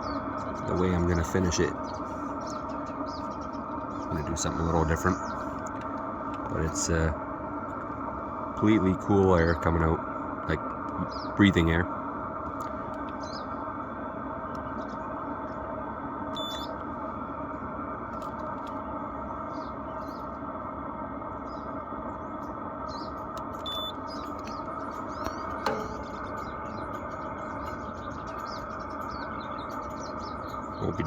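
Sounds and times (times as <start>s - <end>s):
air heater exhaust rushing: 0.0s - 31.0s
faint bird chirps: 10.9s - 11.8s, 16.4s - 16.8s, 19.2s - 20.4s, 21.4s - 31.0s.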